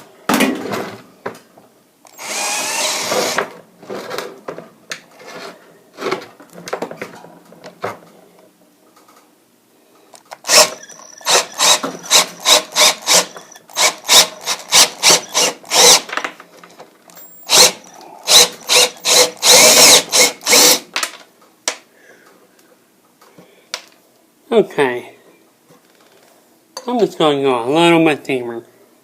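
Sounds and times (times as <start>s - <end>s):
power drill boring into metal pipe: 2.1s - 3.5s, 10.4s - 16.1s, 17.4s - 20.8s.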